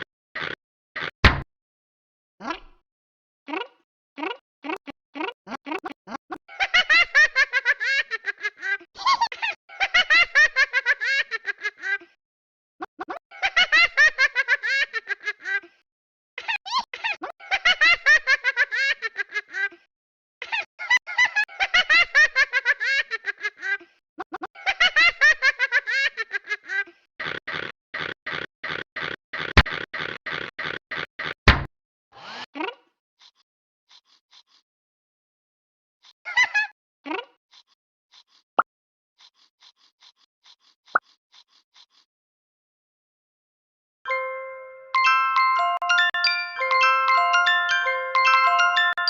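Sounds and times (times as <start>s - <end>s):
high-pitched laughter: 5.2s - 12.2s, 12.9s - 15.8s, 16.4s - 27.1s, 36.0s - 37.7s.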